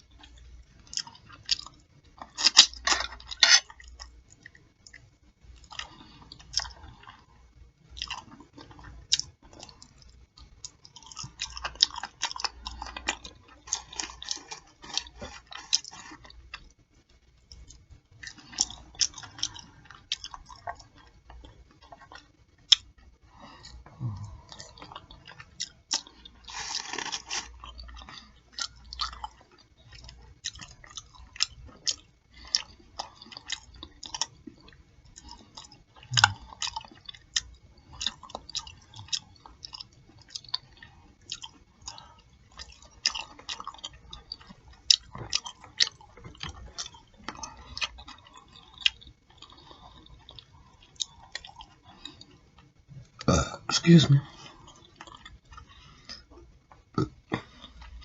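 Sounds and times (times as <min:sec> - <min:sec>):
chewing and lip smacking: 0:00.1 - 0:53.4, 0:54.2 - 0:58.0
wet mouth clicks and crunches: 0:30.0 - 0:53.4.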